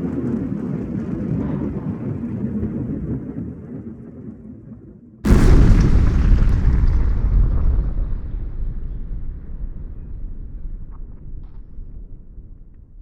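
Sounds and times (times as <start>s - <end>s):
deep noisy rumble: 5.3s - 13.0s.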